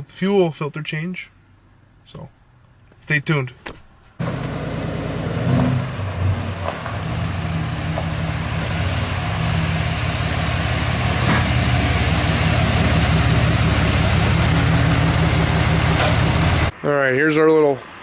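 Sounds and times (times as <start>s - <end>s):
engine idling: 4.2s - 16.7s.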